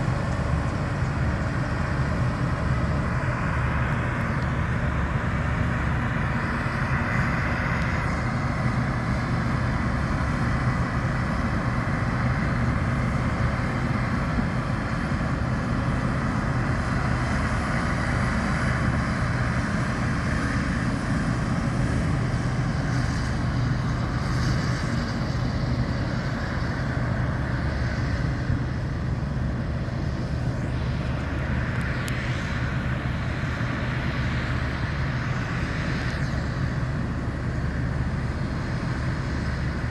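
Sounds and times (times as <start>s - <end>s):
combine harvester drone: 0.0s - 39.9s.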